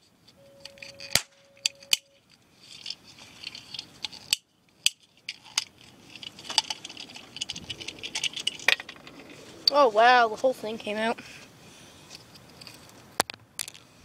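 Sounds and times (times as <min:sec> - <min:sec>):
clicking and rattling of toy parts: 0:00.6 - 0:09.8, 0:12.1 - 0:13.9.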